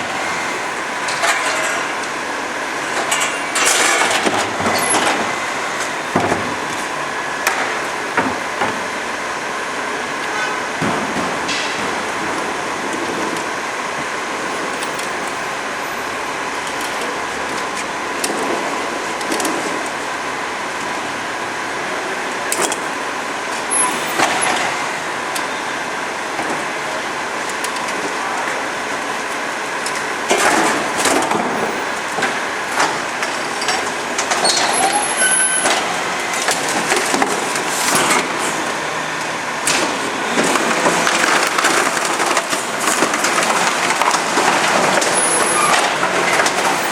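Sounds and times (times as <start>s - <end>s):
garbage truck running: 0.0s - 46.9s.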